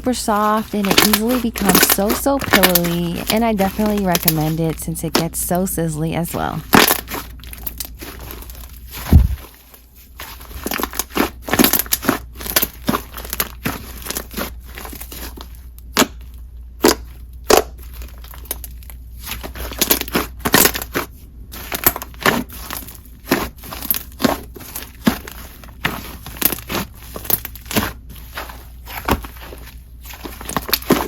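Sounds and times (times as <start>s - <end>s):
slime popping and crackling: 0.0s - 5.2s.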